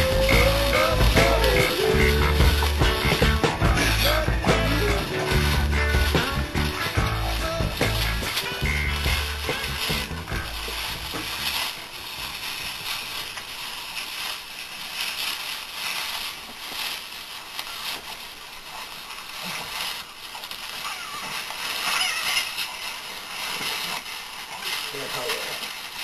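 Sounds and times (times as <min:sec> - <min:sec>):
song: 0:00.0 - 0:11.6
crunching and rustling: 0:00.0 - 0:26.0.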